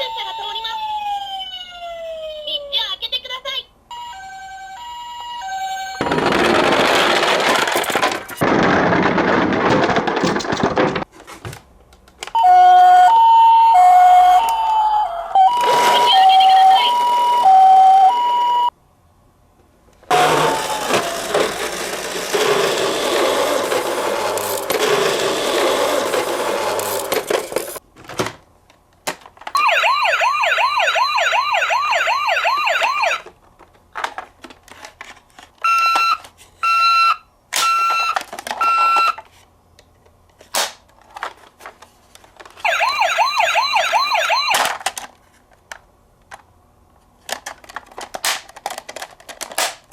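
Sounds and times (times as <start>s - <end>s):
fast-warbling siren: 0.0s - 2.6s, 12.5s - 18.7s, 29.6s - 33.2s, 42.7s - 44.6s
two-tone ambulance siren: 0.0s - 2.7s, 3.9s - 6.1s, 12.4s - 18.7s, 29.6s - 33.3s, 42.6s - 44.6s.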